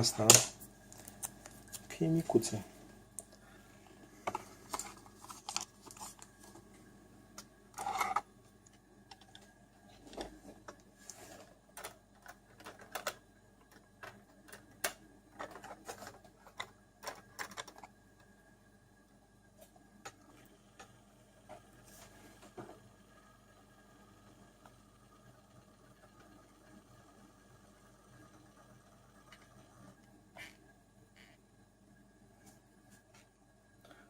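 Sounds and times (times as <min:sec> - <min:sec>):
packaging rustling: 0:04.4 - 0:06.6.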